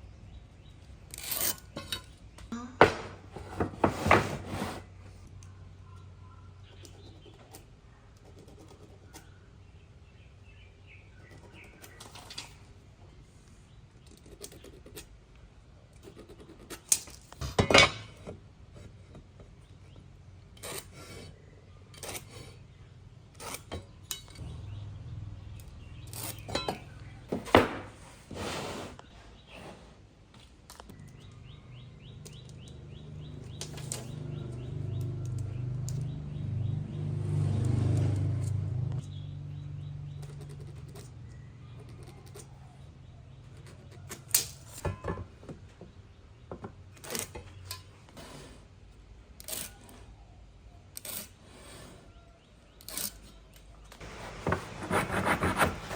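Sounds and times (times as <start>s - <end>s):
knocks and clinks of tools and timber: 1.1s - 4.4s, 25.6s - 28.2s.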